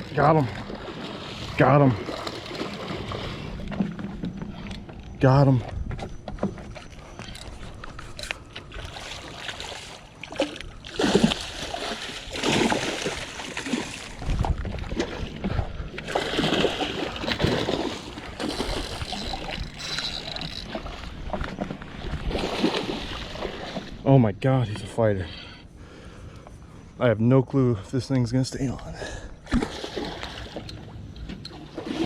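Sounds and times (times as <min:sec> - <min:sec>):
fish thrashing and splashing: 0:00.0 - 0:05.0, 0:05.9 - 0:24.0, 0:29.5 - 0:30.8.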